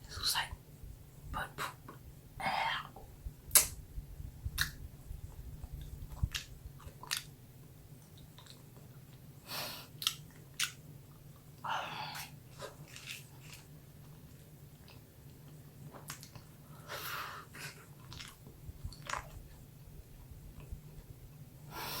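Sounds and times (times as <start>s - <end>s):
person chewing: 5.6s - 7.3s, 10.0s - 11.2s, 17.6s - 19.6s.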